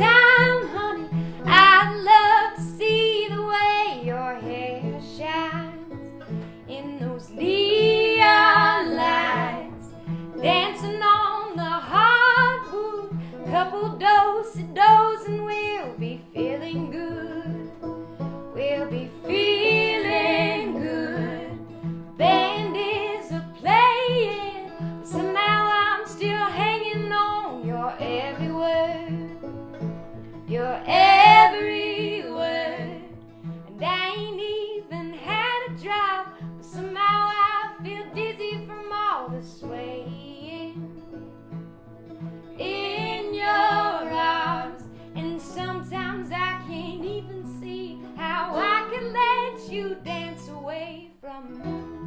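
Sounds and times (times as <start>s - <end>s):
country music with guitar: 0.0s - 52.0s.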